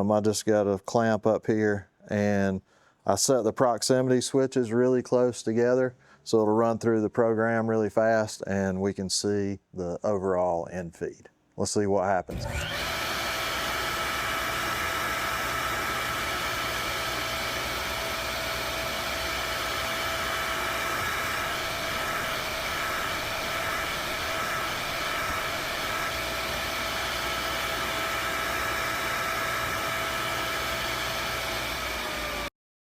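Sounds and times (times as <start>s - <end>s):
grinder motor whine: 12.3s - 32.5s.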